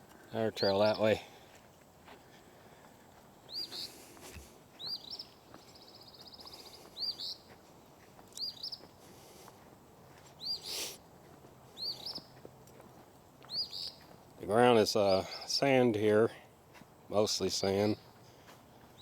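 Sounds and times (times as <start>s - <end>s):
songbirds chirping: 0.0s - 19.0s
bird trill: 3.5s - 3.9s, 4.8s - 7.5s, 8.3s - 8.9s, 10.4s - 10.8s, 11.8s - 12.3s, 13.5s - 14.1s
harsh bird rasp: 10.4s - 11.0s.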